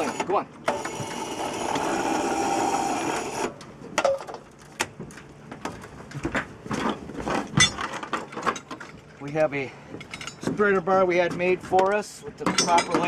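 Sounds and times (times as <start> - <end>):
electric hoist motor running: 0.0 - 3.6
metal hardware clicks and knocks: 6.3 - 9.4, 10.0 - 13.0.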